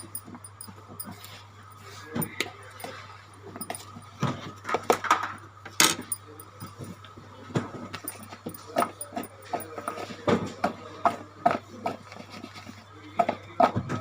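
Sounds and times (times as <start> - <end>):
metallic clinking in a bowl: 0.0 - 4.2, 5.3 - 7.0, 8.0 - 10.1.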